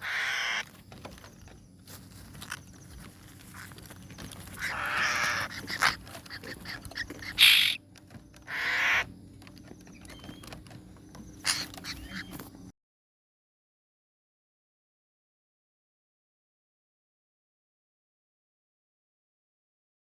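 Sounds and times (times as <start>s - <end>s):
chick begging calls: 0.0s - 0.7s, 4.4s - 7.8s, 8.4s - 9.1s, 11.4s - 12.4s.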